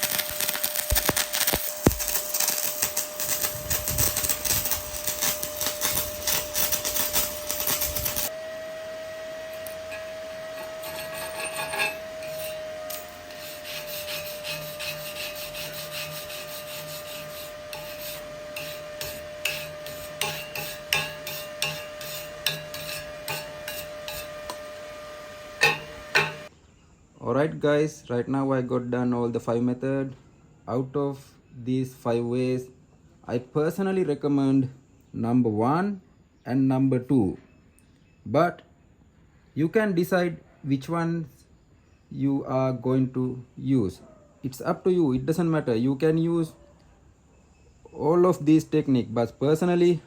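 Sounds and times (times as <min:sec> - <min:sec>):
welding arc crackling: 0:00.0 - 0:08.5, 0:09.5 - 0:26.5
metal scraping: 0:00.0 - 0:08.6, 0:09.2 - 0:26.5
steady whine: 0:00.0 - 0:26.5.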